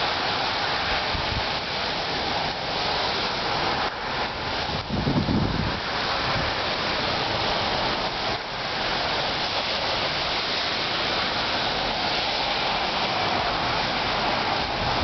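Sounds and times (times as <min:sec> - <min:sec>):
sleet and snow hissing: 0:05.0 - 0:15.0.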